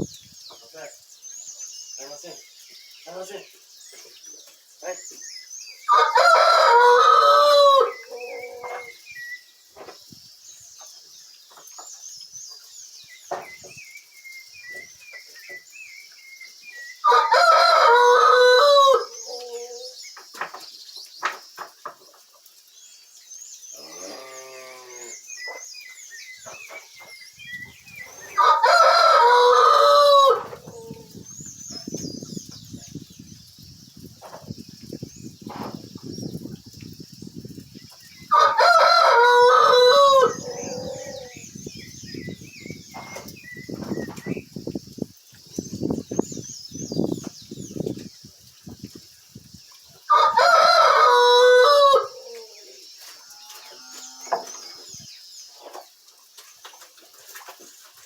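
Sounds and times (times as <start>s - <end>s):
rooster crowing: 5.9s - 8.9s, 17.0s - 19.9s, 28.4s - 31.1s, 38.3s - 41.4s, 50.1s - 52.6s.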